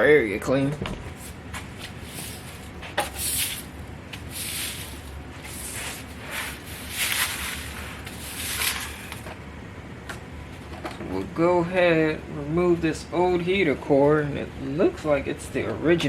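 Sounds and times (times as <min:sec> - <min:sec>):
broom sweeping a floor: 0:01.2 - 0:09.3.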